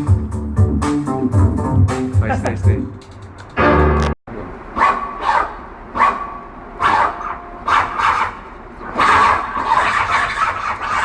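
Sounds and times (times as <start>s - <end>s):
guitar synthesizer repeated bursts: 3.6s - 4.1s.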